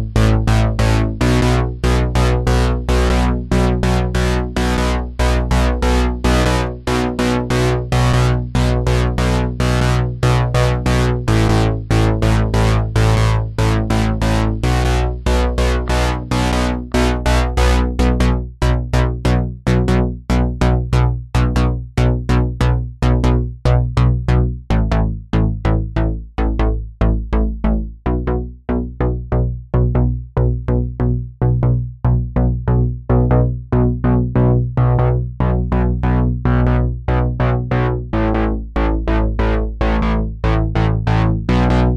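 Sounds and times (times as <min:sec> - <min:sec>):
electronic synthesizer music: 0:00.0 - 0:19.8, 0:34.2 - 0:41.9.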